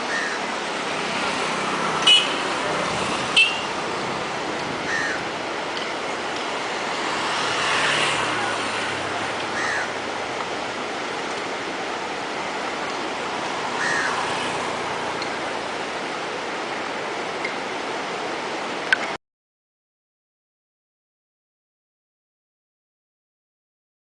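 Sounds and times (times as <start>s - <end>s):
whitewater river rushing: 0.0s - 19.2s.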